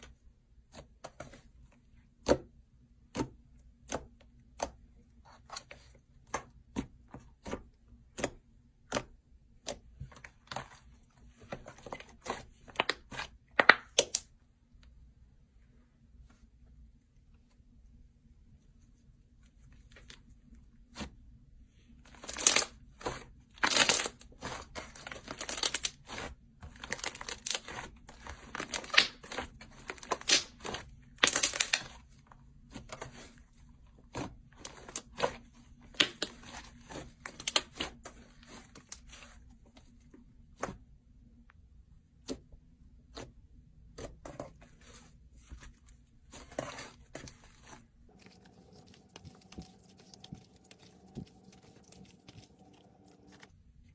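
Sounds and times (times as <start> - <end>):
slime crackling and popping: 28.4 - 31.9.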